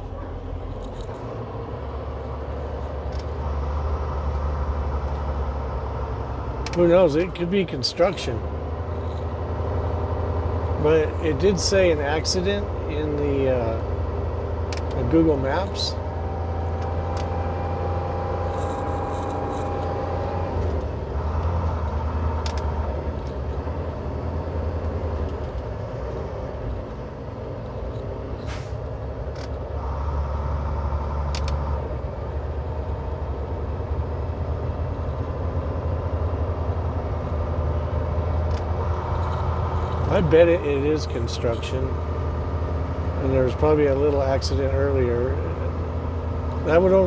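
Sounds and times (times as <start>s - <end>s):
truck engine rumbling: 0.0s - 47.0s.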